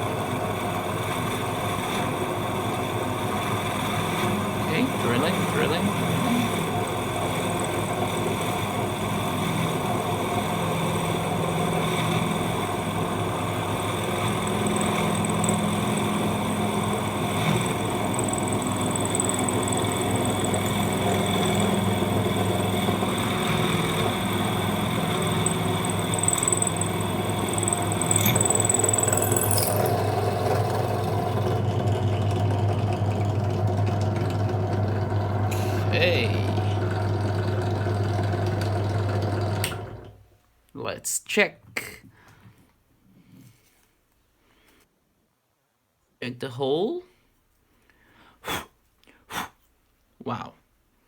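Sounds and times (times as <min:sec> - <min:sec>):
drill bit grinding through metal: 0:00.0 - 0:32.5, 0:35.5 - 0:37.6
drill press motor hum: 0:00.0 - 0:40.2.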